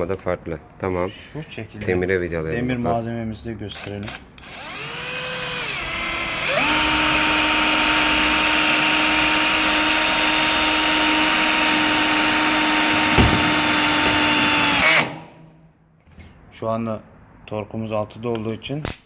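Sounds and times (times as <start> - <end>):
cordless drill motor whine: 4.4 - 15.1.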